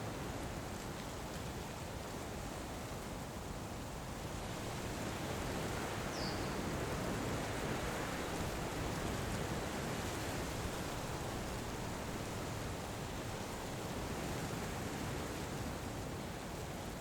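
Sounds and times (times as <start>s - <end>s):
wind rustling through vegetation: 0.0s - 17.0s
faint high chirp: 6.2s - 6.6s.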